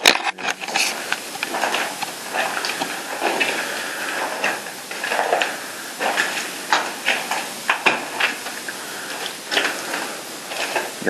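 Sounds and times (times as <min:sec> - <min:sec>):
footsteps crunching on debris: 0:00.0 - 0:11.0
steady hiss: 0:00.0 - 0:11.0.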